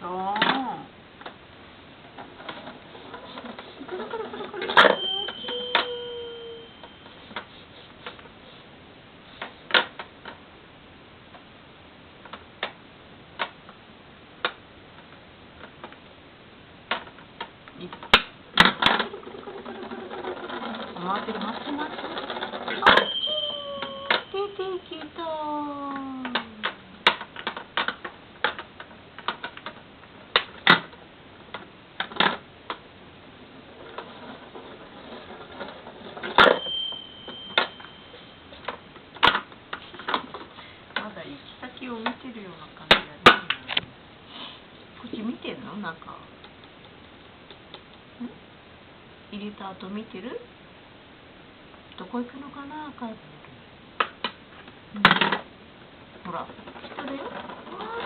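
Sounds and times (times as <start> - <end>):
plastic balls clacking down track: 18.0 - 24.3.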